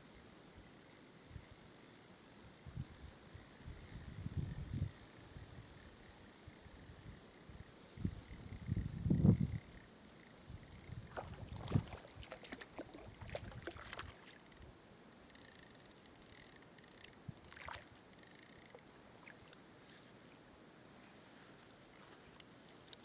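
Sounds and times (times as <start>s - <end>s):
clicks and rustles: 22.1s - 23.0s.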